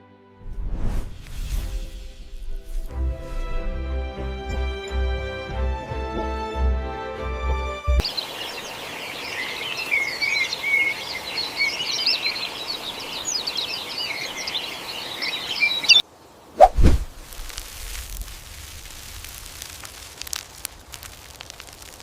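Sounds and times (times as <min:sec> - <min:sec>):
background music: 0:00.0 - 0:00.5, 0:01.6 - 0:08.0
small birds chirping: 0:08.0 - 0:16.6
steady outdoor noise: 0:08.0 - 0:22.0.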